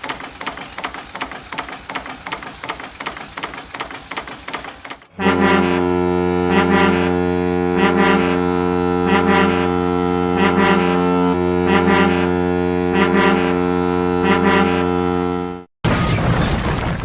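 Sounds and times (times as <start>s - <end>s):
loud horn-like held chord: 5.1s - 15.7s.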